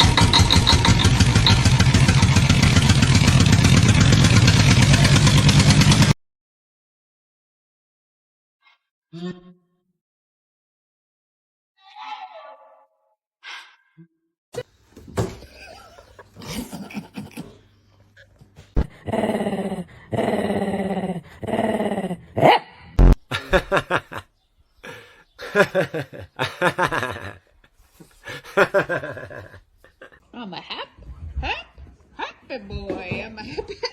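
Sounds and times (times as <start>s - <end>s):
dog barking and growling: 15.3s - 17.5s, 18.2s - 23.0s.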